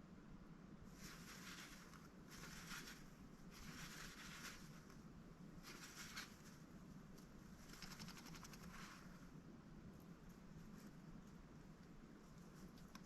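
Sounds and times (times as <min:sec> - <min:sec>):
faint feather rustling: 0:00.9 - 0:13.0
duck bill nibbling clicks: 0:07.7 - 0:08.9, 0:12.6 - 0:13.0.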